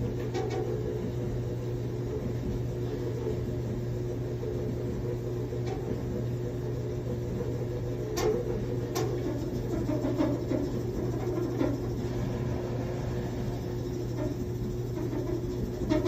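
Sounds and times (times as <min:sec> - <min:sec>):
clothes dryer rumbling: 0:00.0 - 0:16.0.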